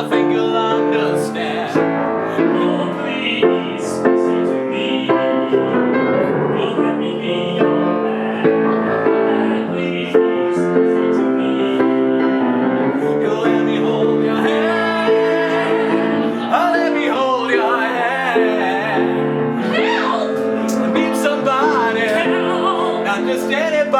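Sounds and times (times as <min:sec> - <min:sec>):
operatic singing with vibrato: 0:00.0 - 0:23.9
piano music: 0:00.0 - 0:23.9.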